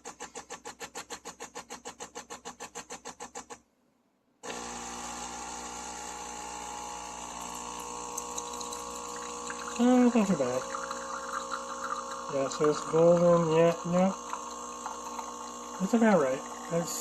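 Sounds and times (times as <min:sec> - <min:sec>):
espresso machine pump: 0:04.4 - 0:17.0.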